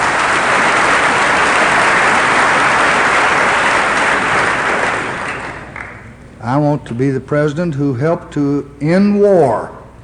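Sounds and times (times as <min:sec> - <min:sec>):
audience applauding: 0:00.0 - 0:06.1.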